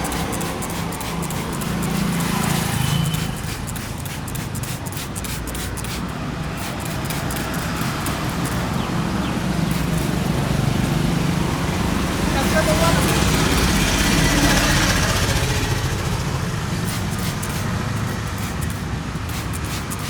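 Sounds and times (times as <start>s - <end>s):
barber tools tapping and clicking: 0.0s - 8.9s, 16.8s - 20.0s.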